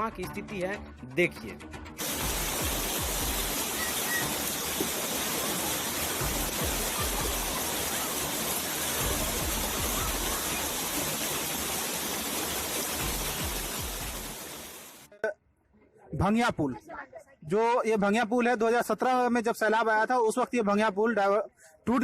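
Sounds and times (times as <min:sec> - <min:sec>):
floodwater rushing: 0:02.0 - 0:15.1.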